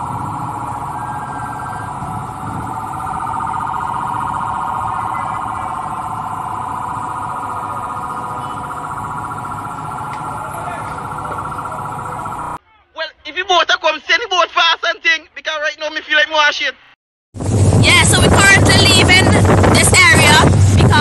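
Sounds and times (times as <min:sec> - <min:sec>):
warbling electronic alarm: 0:00.0 - 0:12.6, 0:18.4 - 0:21.0.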